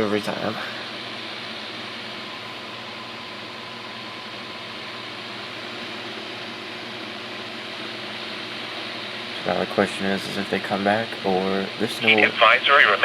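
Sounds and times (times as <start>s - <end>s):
low electrical hum: 0.0s - 13.0s
radio static hiss: 12.0s - 13.0s.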